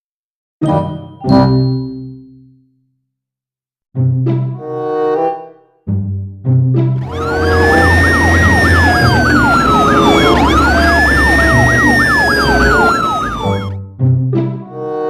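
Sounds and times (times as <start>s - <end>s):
siren wail: 7.0s - 13.8s
siren yelp: 7.0s - 13.8s.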